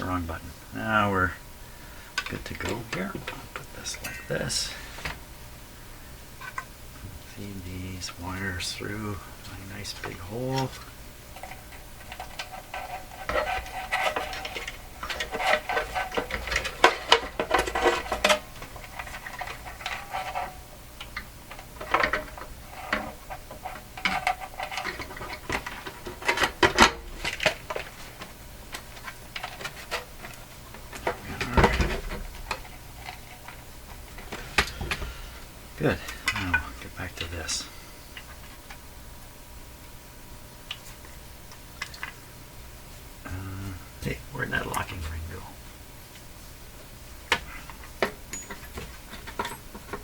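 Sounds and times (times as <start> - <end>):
small metal parts clinking: 48.3 - 50.0.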